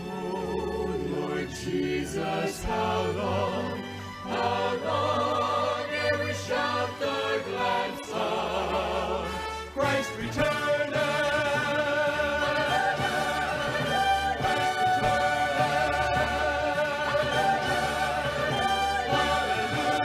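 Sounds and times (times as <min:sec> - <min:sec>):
gospel choir singing: 0:00.0 - 0:20.0
orchestral accompaniment: 0:00.0 - 0:20.0.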